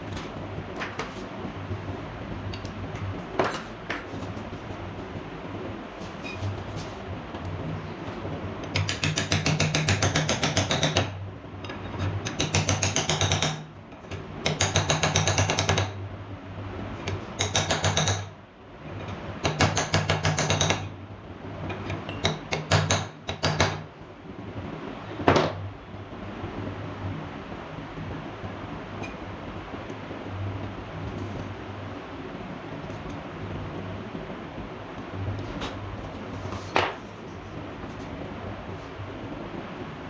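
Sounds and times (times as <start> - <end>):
steady low hum: 0.0 - 12.8, 20.8 - 40.0.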